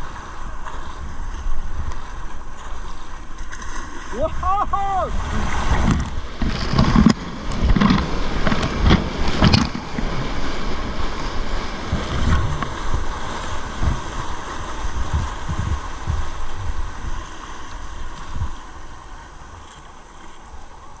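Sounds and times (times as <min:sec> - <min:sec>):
breaking surf: 0:00.0 - 0:21.0
rushing water: 0:00.0 - 0:21.0
wind buffeting microphone: 0:04.1 - 0:19.7
low irregular thumps: 0:11.0 - 0:17.3.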